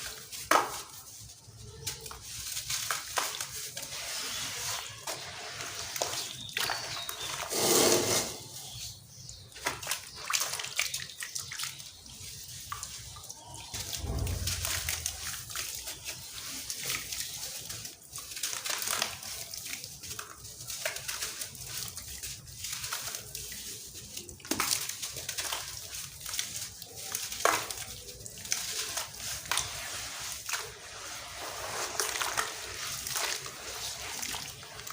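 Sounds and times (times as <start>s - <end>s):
sand cement crumbling: 0.0s - 10.2s, 12.4s - 17.8s, 22.4s - 34.9s.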